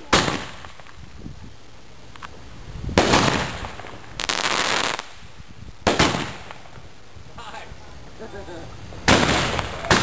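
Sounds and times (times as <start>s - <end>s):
firework bangs with crackling: 0.0s - 1.4s, 2.0s - 7.0s, 8.8s - 10.0s.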